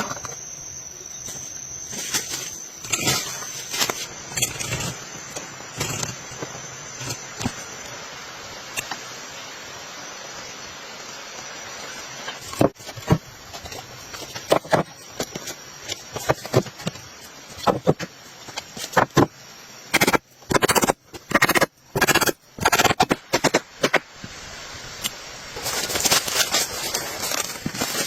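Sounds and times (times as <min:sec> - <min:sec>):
faint high steady tone: 0:00.0 - 0:04.5
rain hissing: 0:23.8 - 0:28.0.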